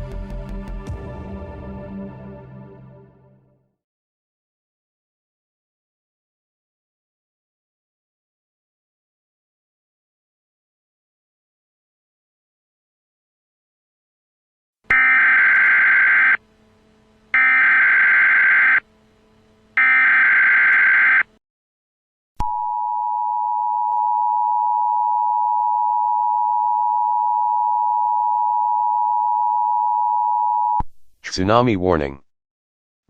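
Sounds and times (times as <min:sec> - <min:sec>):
shrill data warble bursts: 0:14.9 - 0:16.4, 0:17.3 - 0:18.8, 0:19.8 - 0:21.3
steady two-tone alert signal: 0:14.9 - 0:16.4, 0:17.3 - 0:18.8, 0:19.8 - 0:21.3.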